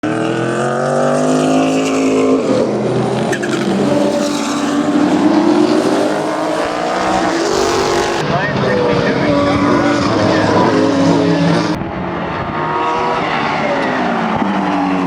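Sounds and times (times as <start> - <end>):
race car accelerating: 0.0 - 15.0
turbo flutter: 3.0 - 8.2.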